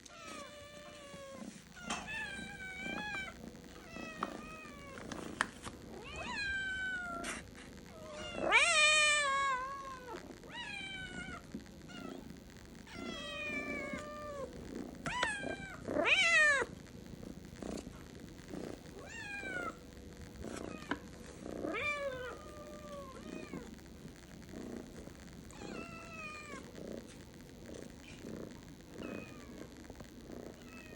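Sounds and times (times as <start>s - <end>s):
cats meowing: 0.0s - 5.1s, 6.0s - 7.4s, 8.0s - 12.3s, 12.9s - 16.7s, 18.9s - 19.8s, 20.5s - 23.7s, 25.5s - 26.8s, 27.8s - 29.8s, 30.4s - 30.9s.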